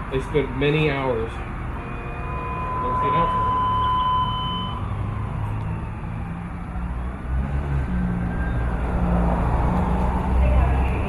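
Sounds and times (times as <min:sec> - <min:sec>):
radio alert tone: 0:01.4 - 0:04.9.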